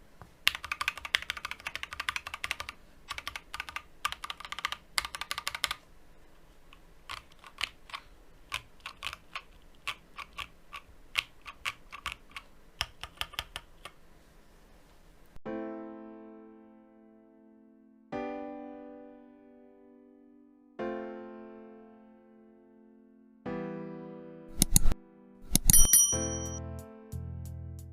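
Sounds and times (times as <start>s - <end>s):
mechanical keyboard typing: 0.4s - 5.8s, 6.7s - 14.0s, 24.5s - 26.3s
soft piano music: 15.4s - 27.9s.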